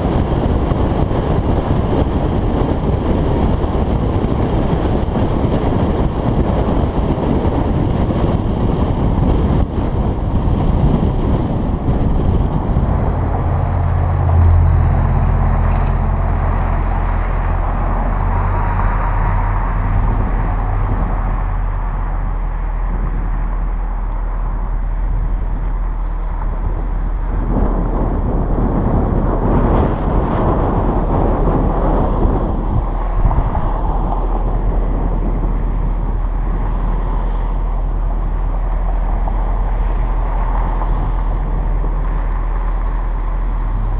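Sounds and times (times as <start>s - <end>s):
car engine exhaust drone: 0.0s - 43.9s
road noise: 0.0s - 43.9s
rushing wind: 0.0s - 43.9s.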